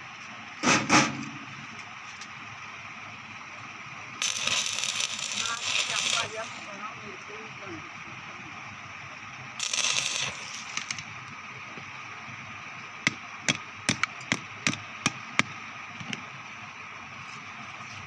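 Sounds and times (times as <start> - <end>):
welding machine hum: 1.4 - 18.0
arc welder crackling hiss: 4.2 - 7.6, 9.6 - 16.2
sharp taps on metal: 13.0 - 16.2.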